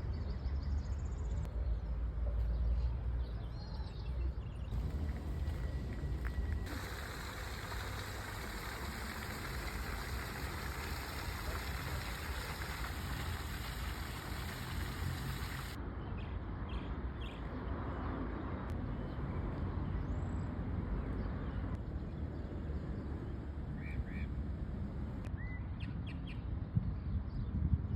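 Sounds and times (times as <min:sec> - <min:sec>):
distant city traffic rumble: 0:04.3 - 0:25.3
bright hiss: 0:04.8 - 0:15.8.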